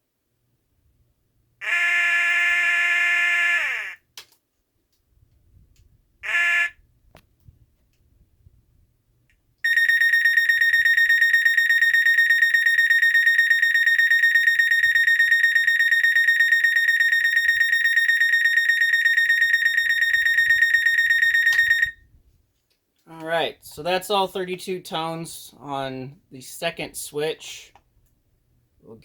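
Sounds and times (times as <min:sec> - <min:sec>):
pulsing warbling alarm tone: 0:09.7 - 0:21.9.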